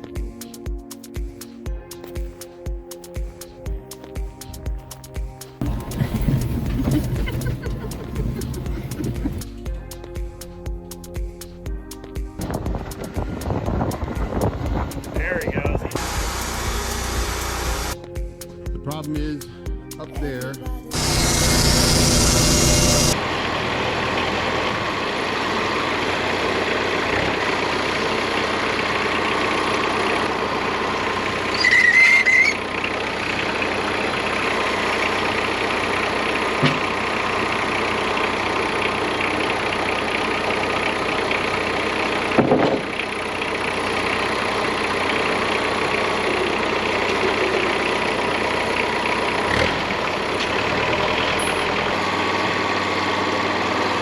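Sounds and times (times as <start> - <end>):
bandsaw sawmill running: 15.9 - 18.0, 20.9 - 54.0
high wavering squeal: 31.5 - 32.7
clunks and knocks: 36.6 - 36.9, 42.4 - 43.0.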